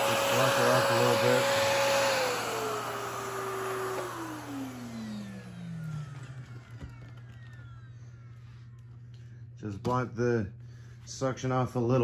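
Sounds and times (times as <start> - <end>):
vacuum cleaner motor winding down: 0.0 - 9.0.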